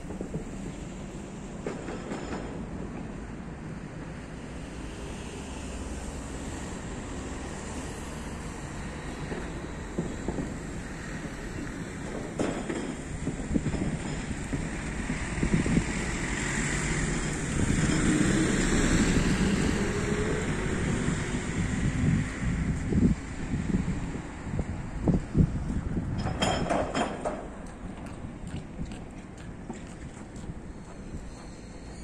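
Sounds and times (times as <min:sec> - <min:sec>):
wind rumbling on microphone: 0:00.0 - 0:02.0, 0:02.7 - 0:32.0
distant traffic: 0:00.0 - 0:32.0
vehicle passing: 0:15.1 - 0:24.1.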